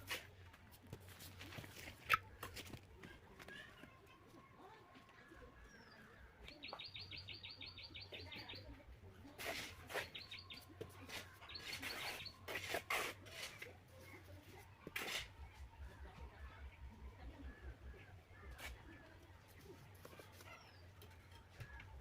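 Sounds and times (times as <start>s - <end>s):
small bird chirping: 5.7s - 8.8s, 9.9s - 12.6s.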